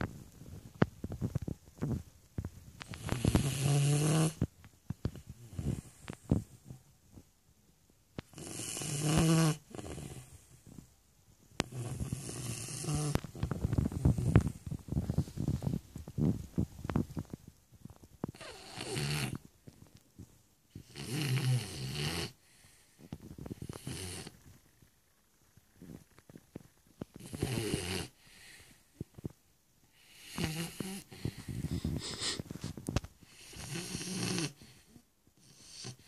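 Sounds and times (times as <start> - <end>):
soft crackling breaths: 0.0 - 36.0
dog snoring: 2.8 - 4.5, 5.1 - 6.8, 8.3 - 10.8, 11.6 - 15.6, 18.2 - 19.4, 20.7 - 22.8, 23.4 - 24.4, 27.1 - 28.8, 29.9 - 32.5, 33.2 - 36.0.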